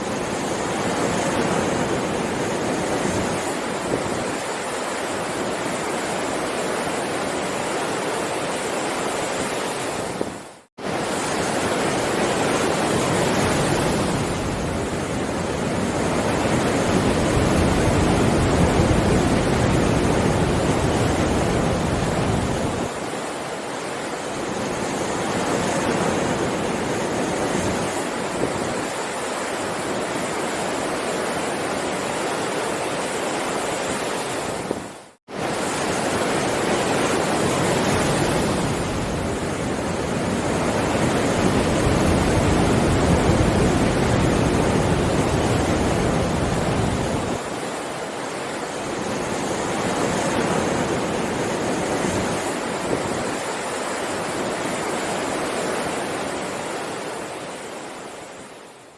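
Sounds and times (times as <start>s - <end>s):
heavy surf breaking waves: 0.0s - 58.9s.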